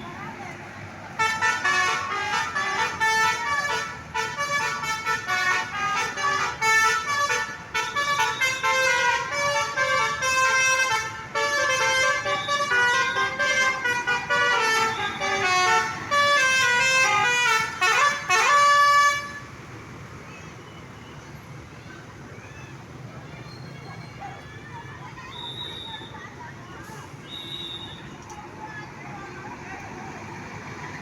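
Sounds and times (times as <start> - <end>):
musical horn playing a melody: 1.2 - 19.4.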